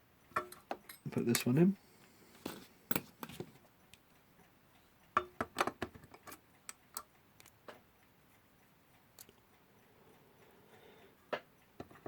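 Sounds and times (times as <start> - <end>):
metal clock parts clicking: 0.3 - 1.6, 5.0 - 7.8.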